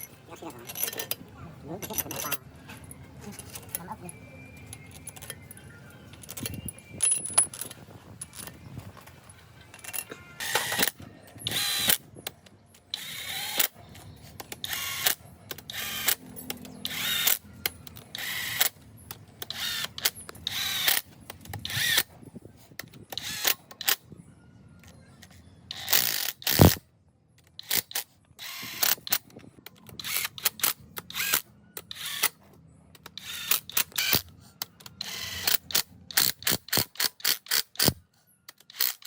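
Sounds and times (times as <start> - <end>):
ratchet wrench ratcheting: 14.6 - 22.1, 25.7 - 26.8, 33.0 - 39.0.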